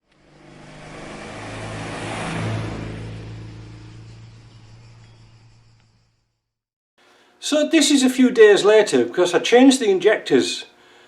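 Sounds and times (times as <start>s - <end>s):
vehicle engine running: 0.0s - 6.3s.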